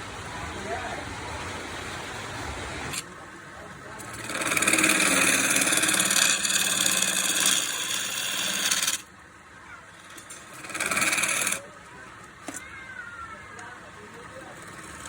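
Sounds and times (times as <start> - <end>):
lathe running quietly: 0.0 - 15.0
tool rasping against spinning wood: 3.8 - 9.1, 9.9 - 12.7, 13.9 - 15.0.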